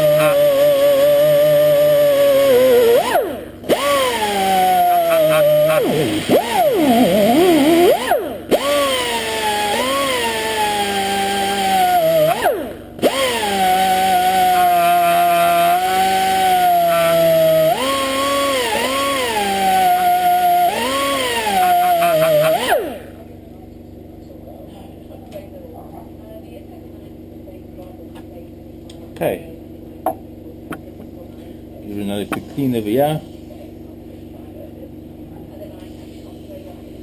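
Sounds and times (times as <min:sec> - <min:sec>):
air tool spinning wire brush: 0:00.0 - 0:23.2.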